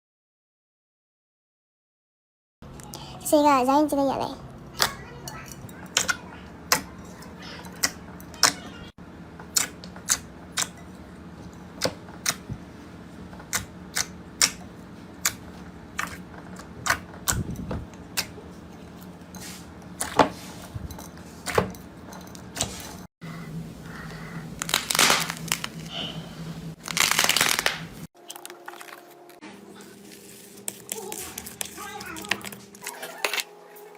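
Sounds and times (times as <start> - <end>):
slime crackling: 24.6 - 25.9, 26.8 - 28.6.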